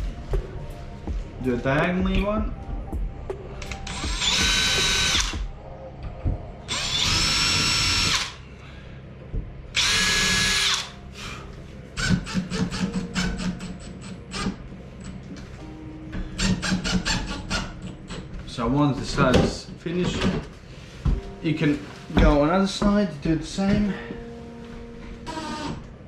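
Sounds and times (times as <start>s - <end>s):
power drill whine: 3.9s - 5.4s, 6.7s - 8.4s, 9.8s - 11.3s, 25.3s - 25.8s.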